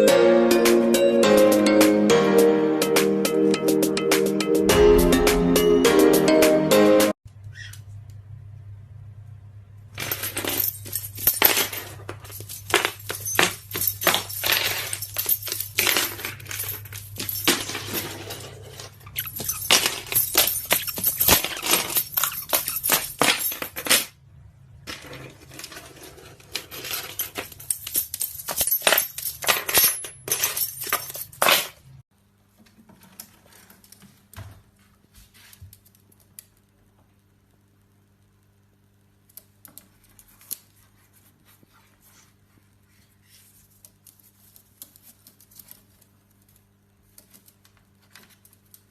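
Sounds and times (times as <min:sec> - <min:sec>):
small hard objects clinking: 0:10.1 - 0:24.0.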